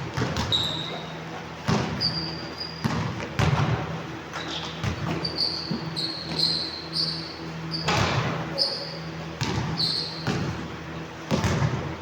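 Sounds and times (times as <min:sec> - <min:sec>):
basketball bouncing: 0:00.0 - 0:01.0, 0:01.6 - 0:02.2, 0:02.8 - 0:03.8, 0:07.8 - 0:08.5, 0:09.4 - 0:10.6, 0:11.3 - 0:11.9
sneaker squeaks: 0:00.2 - 0:03.5, 0:04.3 - 0:10.6.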